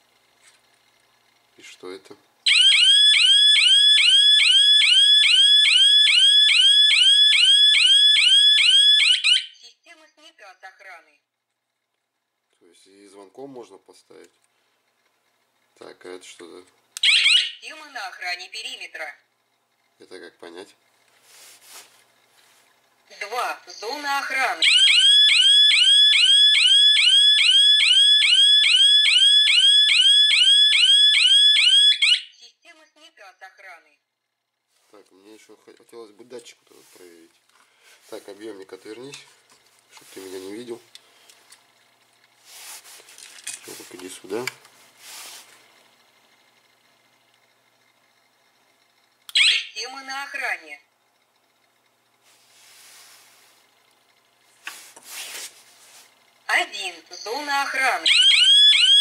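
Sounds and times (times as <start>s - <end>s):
security alarm siren whooping: 2.5s - 9.6s, 17.0s - 17.6s, 24.6s - 32.4s, 49.3s - 49.8s, 57.9s - 59.0s.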